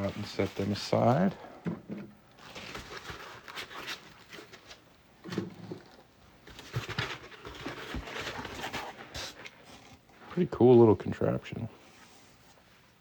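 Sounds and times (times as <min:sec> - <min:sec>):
packaging rustling: 0:02.4 - 0:09.8.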